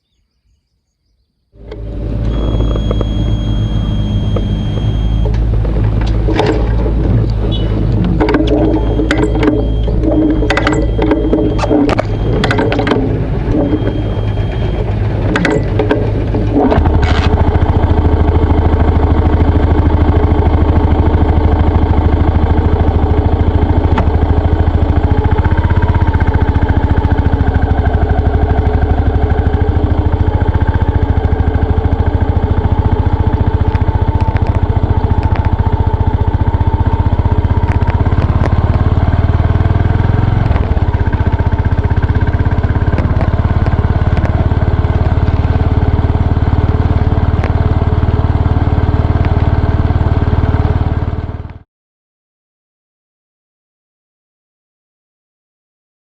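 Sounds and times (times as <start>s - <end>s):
motorcycle engine idling: 1.6s - 51.6s
mechanical clicks: 4.3s - 17.4s.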